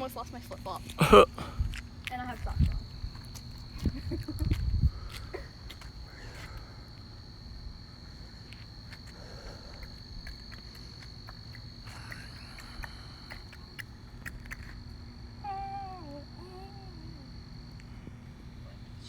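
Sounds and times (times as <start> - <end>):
crickets trilling: 0.0 - 19.0.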